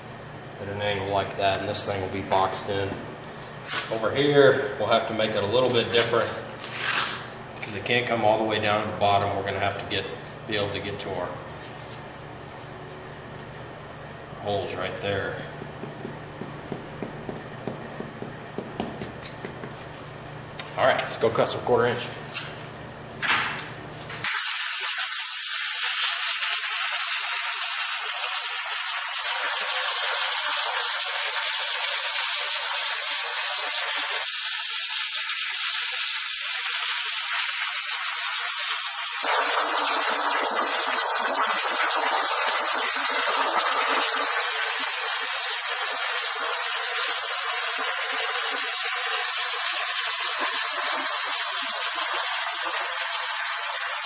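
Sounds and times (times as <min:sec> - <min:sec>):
cutting torch hissing: 0:24.2 - 0:54.0.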